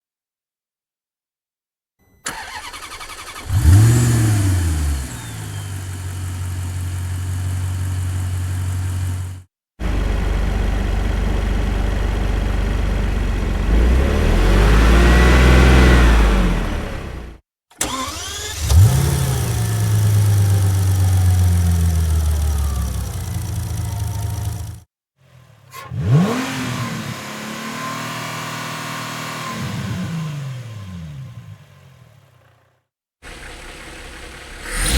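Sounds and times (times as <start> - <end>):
car starter cranking: 2.3 - 5.6, 17.7 - 24.8
car engine revving: 2.3 - 24.8, 33.3 - 34.9
car engine idling: 5.1 - 14.6, 18.0 - 24.8, 33.2 - 34.9.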